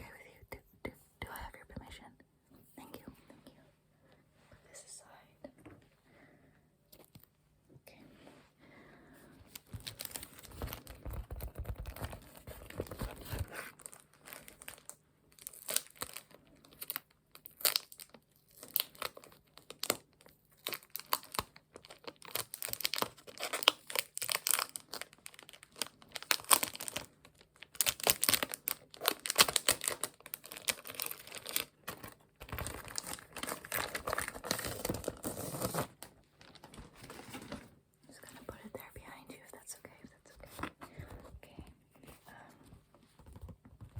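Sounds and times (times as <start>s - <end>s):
tape crinkling and tearing: 9.6s - 37.6s.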